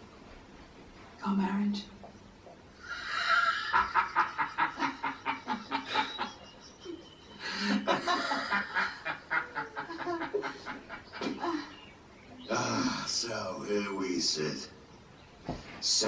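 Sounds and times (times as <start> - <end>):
person laughing: 3.0 - 11.6.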